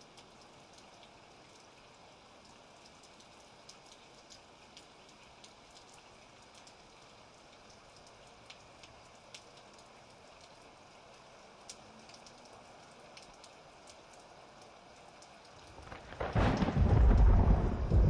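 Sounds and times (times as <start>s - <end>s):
raindrops ticking on a surface: 0.0s - 18.0s
steady rain: 0.0s - 18.0s
thunderclaps: 15.8s - 18.0s.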